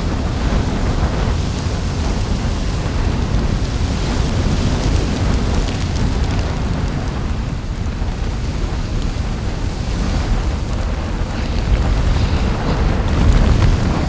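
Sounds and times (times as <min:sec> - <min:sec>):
low steady volcanic rumble: 0:00.0 - 0:14.0
light crackling ticks: 0:04.0 - 0:14.0.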